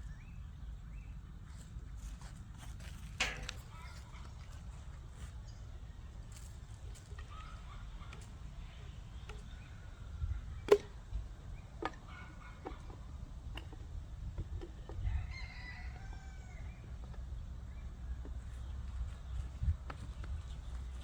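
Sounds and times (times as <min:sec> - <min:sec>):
chickens calling: 0:06.1 - 0:13.8.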